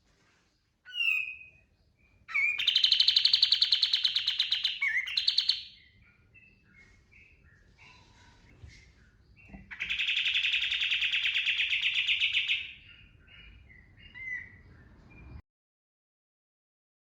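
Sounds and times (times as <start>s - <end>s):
bird rapid-fire trill: 2.3s - 6.0s, 9.7s - 12.8s
bird short chirps: 8.7s - 14.6s.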